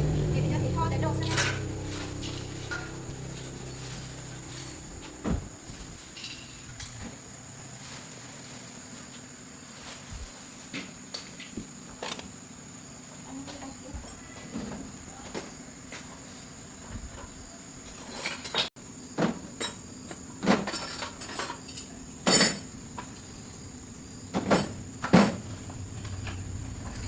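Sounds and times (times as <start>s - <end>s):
high chirring: 0.0s - 5.2s
sharp knocks and clanks: 0.0s - 5.5s, 24.3s - 27.0s.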